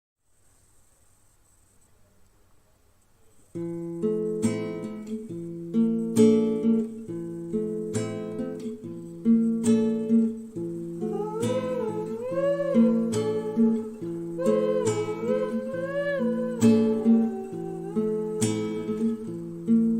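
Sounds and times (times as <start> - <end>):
strummed acoustic guitar chords: 3.6 - 19.9
person humming: 11.0 - 19.6.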